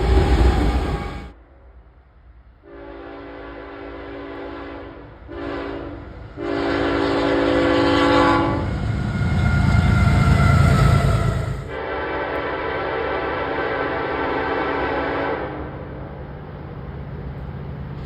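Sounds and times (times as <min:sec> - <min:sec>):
train passing rumble: 0:00.0 - 0:18.0
locomotive air horn blasts: 0:02.6 - 0:10.2, 0:11.6 - 0:15.8.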